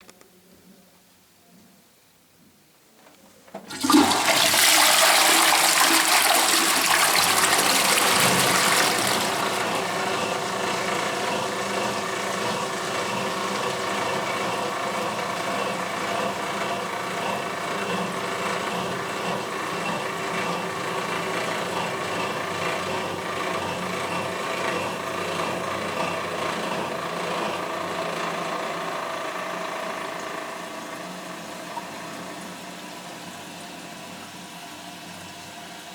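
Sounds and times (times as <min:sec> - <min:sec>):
toilet flush click: 0:03.5 - 0:28.8, 0:29.4 - 0:35.9
toilet flushing water rush: 0:03.6 - 0:35.9
cistern refilling: 0:03.7 - 0:16.6.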